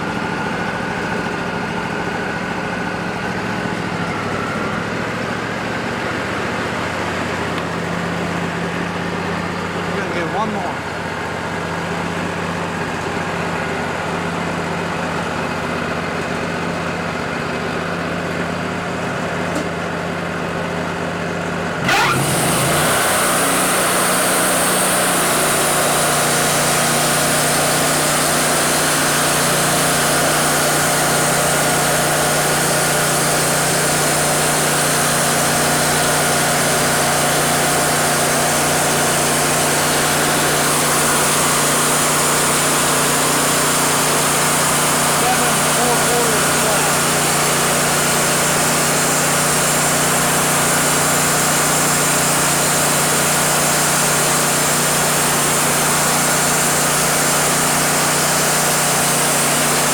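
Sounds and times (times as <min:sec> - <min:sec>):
sawmill engine running: 0:00.0 - 0:59.9
band saw cutting log: 0:07.1 - 0:10.8, 0:21.8 - 0:59.9
band blade whine: 0:21.8 - 0:59.9.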